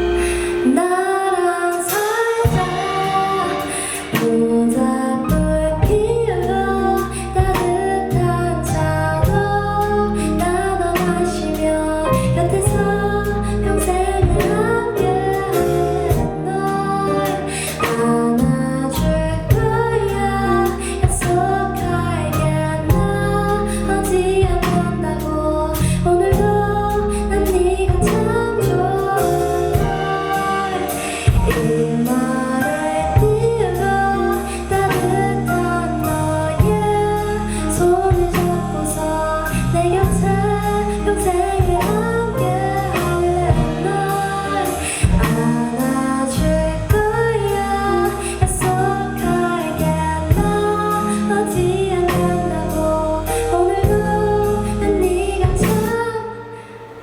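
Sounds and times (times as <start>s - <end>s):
pop ballad by full band: 0.0s - 57.0s
sustained bass line: 0.0s - 57.0s
woman singing: 0.0s - 57.0s
drum hits: 29.8s - 32.1s.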